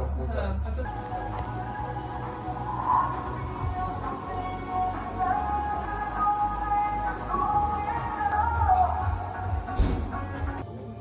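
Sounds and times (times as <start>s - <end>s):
background music with held notes: 0.0s - 11.0s.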